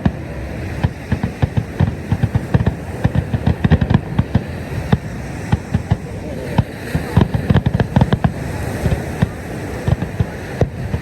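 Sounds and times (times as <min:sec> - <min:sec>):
fireworks booms and pops: 0:00.0 - 0:11.0.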